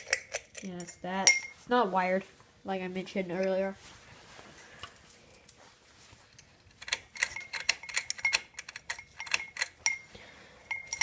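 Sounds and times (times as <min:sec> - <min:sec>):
sharp metallic clicks and clinks: 0:06.4 - 0:11.0.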